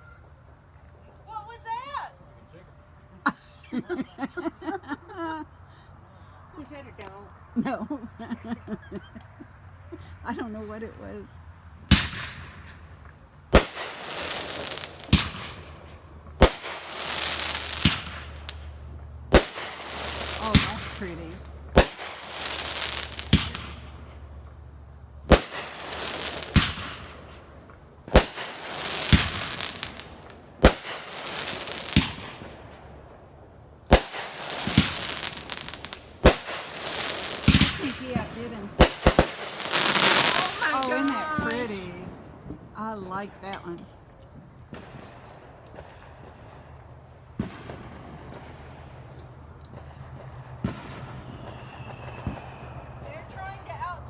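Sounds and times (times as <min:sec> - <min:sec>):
fireworks crackle and hiss: 0:11.8 - 0:43.2, 0:43.9 - 0:53.9
fireworks bangs: 0:11.8 - 0:54.0.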